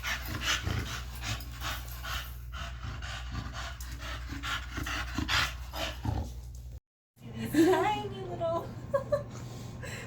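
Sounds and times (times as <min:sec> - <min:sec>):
dog panting fast: 0:00.0 - 0:06.1.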